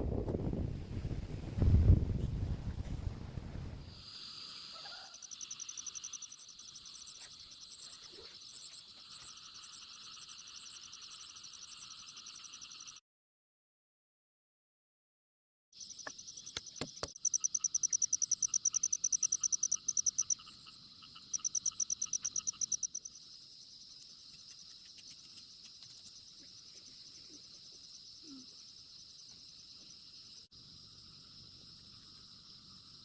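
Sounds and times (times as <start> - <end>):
insect chorus: 3.9 - 13.0, 15.8 - 33.0
insect pulsed high chirping: 3.9 - 13.0, 15.8 - 33.0.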